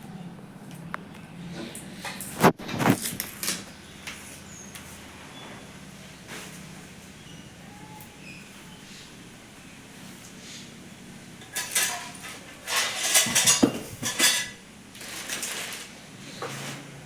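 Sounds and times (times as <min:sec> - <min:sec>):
hard objects clattering: 0:11.4 - 0:15.9.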